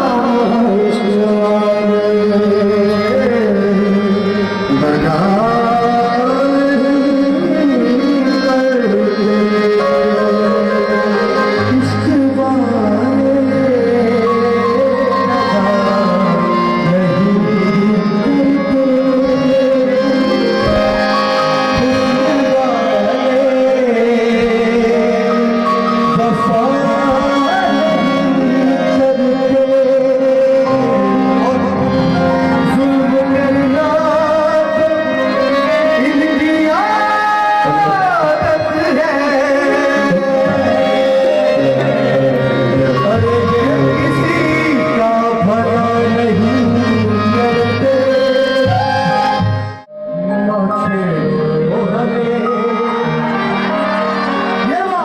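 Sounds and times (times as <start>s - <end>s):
tabla drumming: 20.5s - 22.5s.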